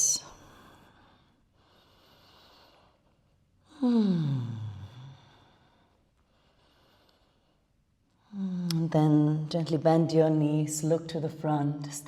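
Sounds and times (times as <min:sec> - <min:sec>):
woman sighing: 0:03.7 - 0:05.1.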